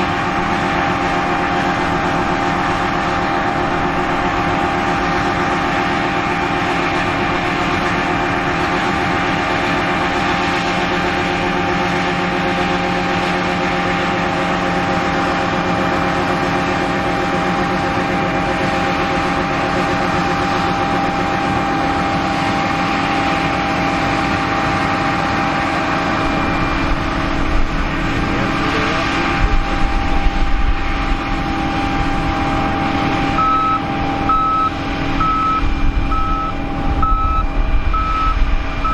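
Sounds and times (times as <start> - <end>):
heavy machinery engine running: 0.0 - 38.9
low rumble: 24.5 - 38.9
reversing beeper: 28.1 - 38.9.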